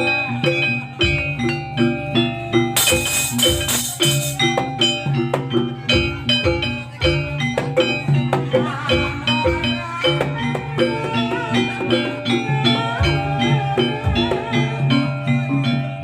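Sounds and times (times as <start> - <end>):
drum strokes: 0.0 - 11.5
pitched metal percussion: 0.0 - 16.0.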